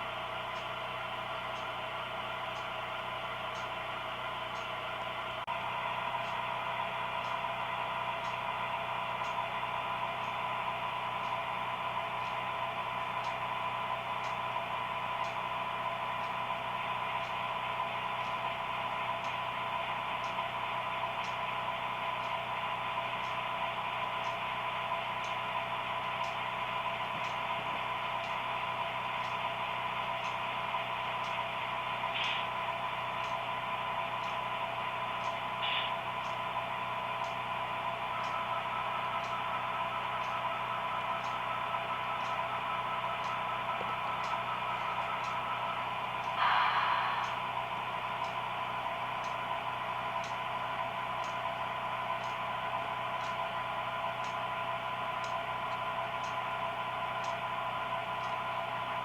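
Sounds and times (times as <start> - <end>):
model train hum and whine: 0.0 - 59.0
light ticks: 1.5 - 1.7, 3.5 - 3.7, 4.5 - 4.7, 13.2 - 13.4, 14.2 - 14.4, 15.2 - 15.4, 19.2 - 19.4, 20.2 - 20.4, 21.2 - 21.4, 23.2 - 23.4, 25.2 - 25.4, 26.2 - 26.4, 28.2 - 28.4, 29.2 - 29.4, 30.2 - 30.4, 31.2 - 31.4, 33.2 - 33.4, 34.2 - 34.4, 35.2 - 36.4, 37.2 - 37.4, 38.2 - 38.4, 39.2 - 39.4, 41.2 - 41.5, 42.2 - 42.5, 43.2 - 45.4, 47.2 - 47.4, 48.2 - 48.4, 49.2 - 49.4, 50.2 - 50.4, 51.2 - 51.6, 52.2 - 52.4, 53.2 - 53.5, 54.2 - 54.5, 55.2 - 56.5, 57.2 - 57.5.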